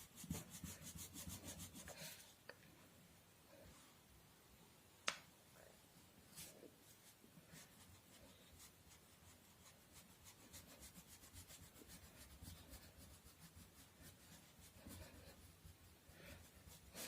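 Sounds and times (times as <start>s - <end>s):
colour rubbed onto paper: 0.0s - 2.3s, 6.3s - 17.0s.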